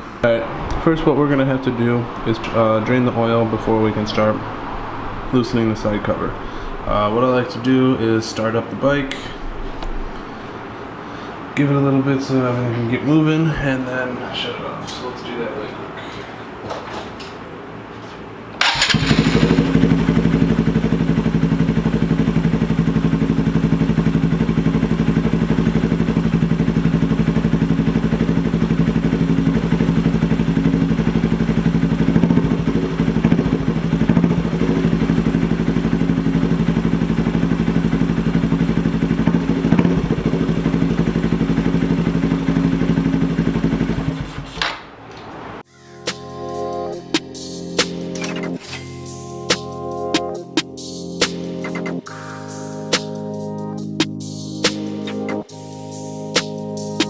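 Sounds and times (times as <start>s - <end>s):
motorcycle engine idling: 18.6s - 44.5s
engine running down: 18.6s - 44.6s
motorcycle engine starting: 18.6s - 44.6s.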